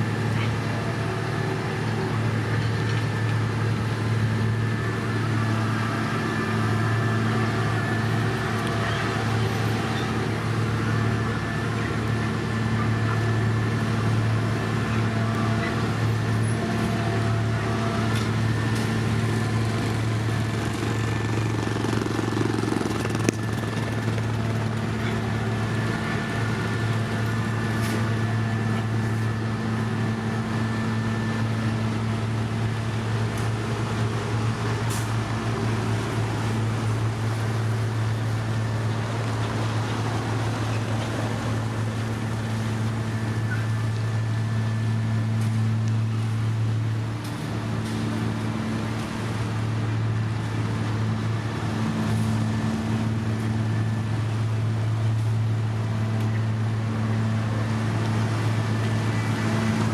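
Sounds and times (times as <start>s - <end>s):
diesel engine drone: 0.0s - 59.9s.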